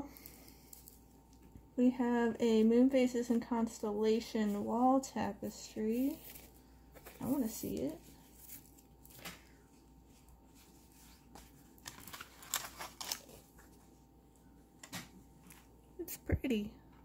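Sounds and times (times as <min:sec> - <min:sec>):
fabric and packaging rustling: 0:02.5 - 0:14.1.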